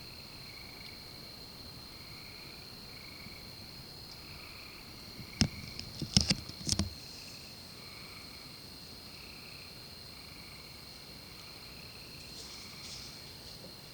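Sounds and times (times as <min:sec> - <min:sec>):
lower buzzing insect call: 0:00.0 - 0:13.9
insect high-pitched trill: 0:00.1 - 0:13.6
sharp clicks and knocks: 0:05.4 - 0:07.0.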